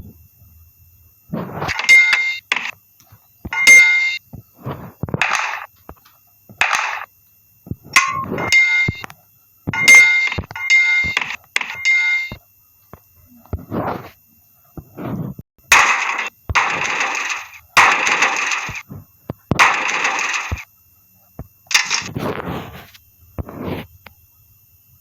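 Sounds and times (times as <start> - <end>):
metal object clanging: 1.7 - 2.7.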